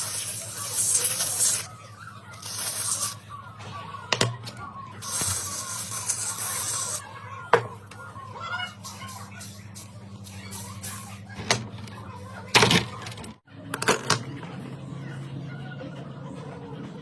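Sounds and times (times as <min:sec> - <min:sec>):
aerosol spray hissing: 0:02.4 - 0:03.2, 0:05.0 - 0:07.0.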